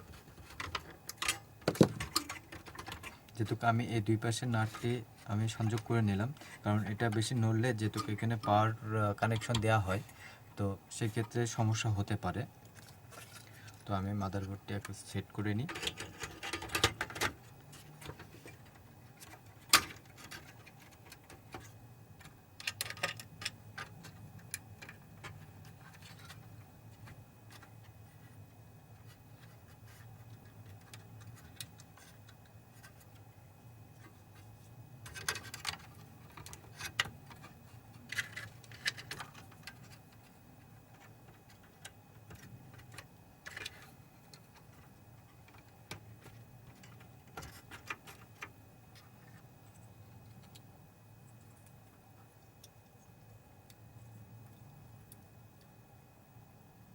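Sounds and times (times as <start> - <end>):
clicks and rattles of parts: 0.0 - 3.6, 12.7 - 33.3, 33.9 - 50.6
faint low hum: 0.0 - 56.9.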